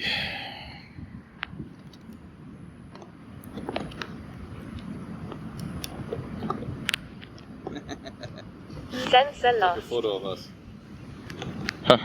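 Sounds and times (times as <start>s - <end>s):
faint background noise: 0.0s - 12.0s.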